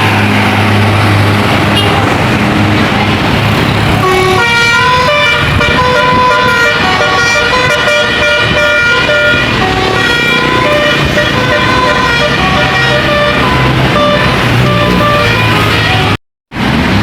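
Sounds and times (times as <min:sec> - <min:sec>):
passing bus rushing noise: 0:00.0 - 0:17.0
musical air horn melody: 0:04.0 - 0:16.2.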